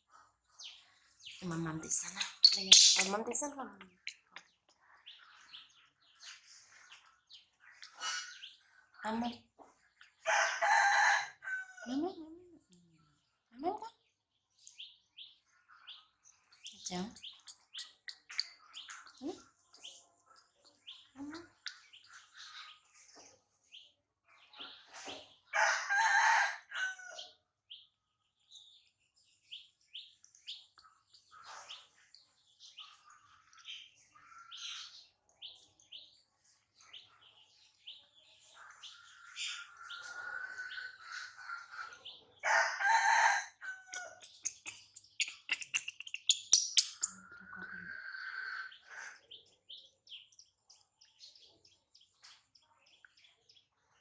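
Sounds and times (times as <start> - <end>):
rooster crowing: 10.3 - 11.8, 25.6 - 27.0, 42.4 - 43.9.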